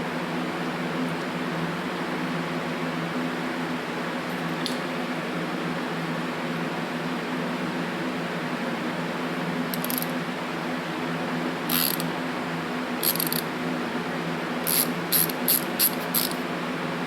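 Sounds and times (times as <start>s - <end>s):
fan hum: 0.0s - 17.0s
metallic clicks and rattles: 9.8s - 10.1s, 14.7s - 16.4s.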